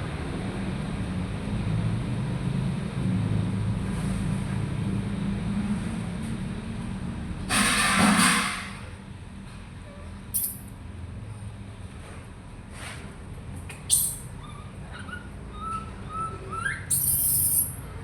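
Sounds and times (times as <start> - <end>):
vehicle engine rumbling: 8.6 - 18.0.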